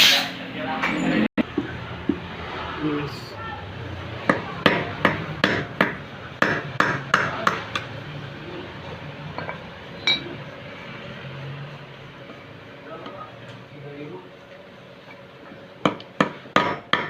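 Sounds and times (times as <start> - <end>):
hammer striking metal housing: 9.4 - 10.4.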